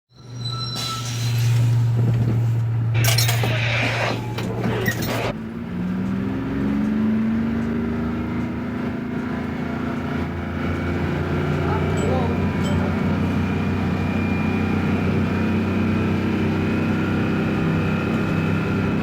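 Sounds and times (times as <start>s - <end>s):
bus engine idling: 0.3s - 5.6s, 10.2s - 19.0s
air brakes hissing: 0.6s - 2.7s
high metallic clink: 3.0s - 5.3s.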